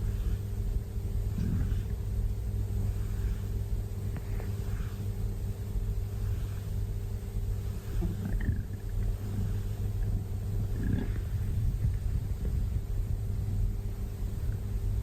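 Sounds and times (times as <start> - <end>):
cat snoring: 0.0 - 0.4, 1.2 - 5.0, 5.8 - 7.0, 7.6 - 12.8
steady low hum: 0.0 - 15.0.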